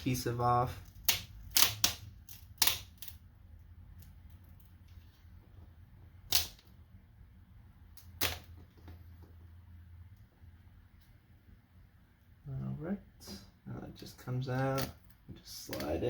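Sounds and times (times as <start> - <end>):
pry tool clicking and snapping: 0.8 - 3.2, 6.3 - 6.7.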